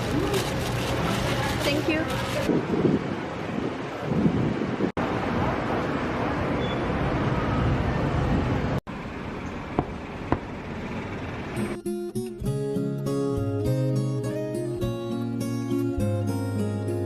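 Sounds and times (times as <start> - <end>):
traffic and wind noise: 0.0 - 12.5
acoustic guitar music: 11.6 - 17.0.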